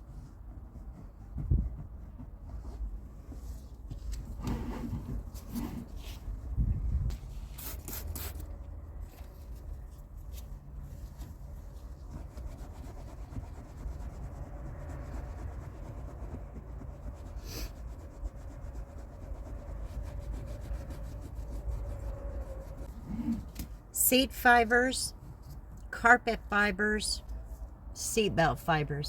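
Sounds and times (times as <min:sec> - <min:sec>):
scrubbing seat belt strap: 0:10.3 - 0:23.6.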